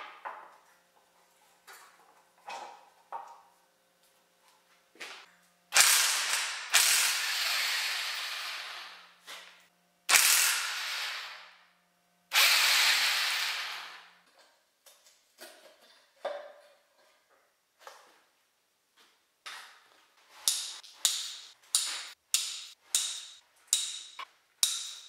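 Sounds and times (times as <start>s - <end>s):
power tool bursts undoing bolts: 5.7s - 9.0s, 10.1s - 11.5s, 12.3s - 14.0s.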